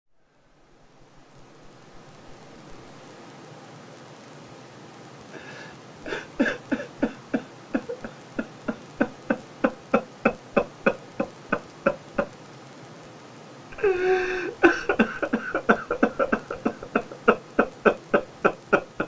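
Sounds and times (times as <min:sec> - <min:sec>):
man sobbing: 0:05.4 - 0:12.3, 0:13.7 - 0:19.0.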